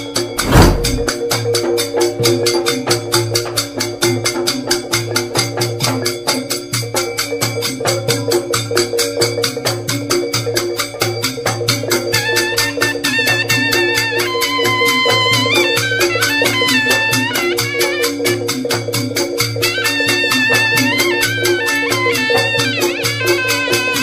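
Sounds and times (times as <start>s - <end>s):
music with fast percussion beat: 0.0s - 24.0s
loud thump: 0.4s - 1.1s.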